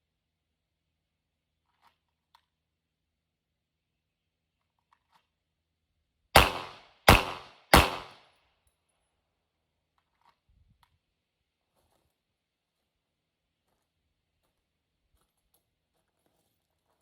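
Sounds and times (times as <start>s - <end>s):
pistol shots: 6.4s - 8.2s.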